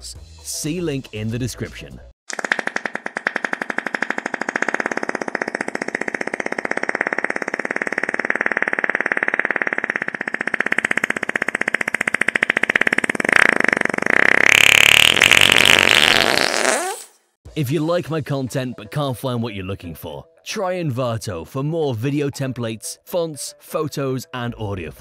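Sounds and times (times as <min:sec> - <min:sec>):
fluttering fart sound effect: 0:02.3 - 0:17.2.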